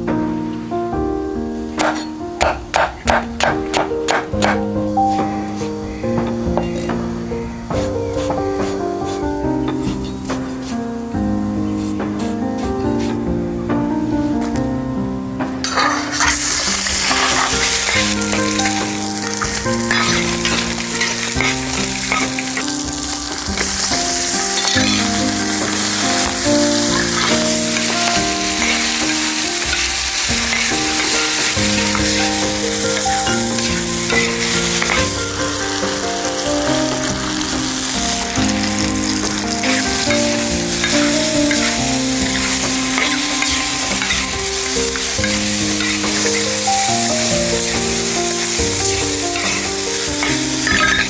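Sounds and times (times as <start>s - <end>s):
food sizzling in hot oil: 1.5s - 13.4s, 15.6s - 51.0s.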